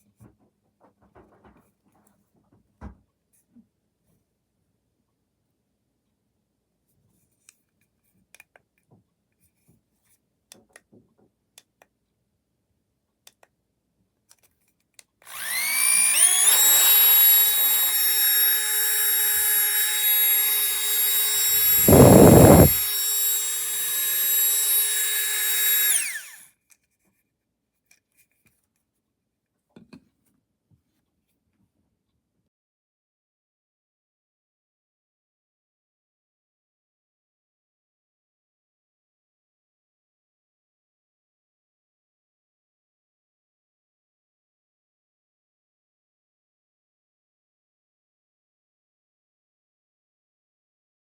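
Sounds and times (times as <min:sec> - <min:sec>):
electric air pump whining: 0:15.3 - 0:26.4
rush of air: 0:21.5 - 0:22.8.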